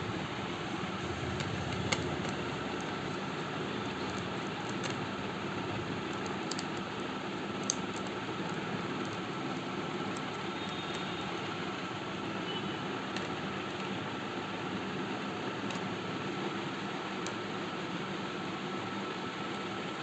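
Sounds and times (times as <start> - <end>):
background hum and hiss: 0.0 - 20.0.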